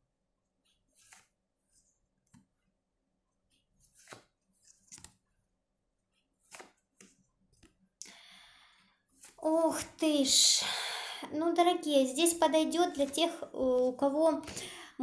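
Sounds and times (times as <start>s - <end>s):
cards snapping and swishing: 1.0s - 1.4s, 3.8s - 5.2s, 6.4s - 7.2s.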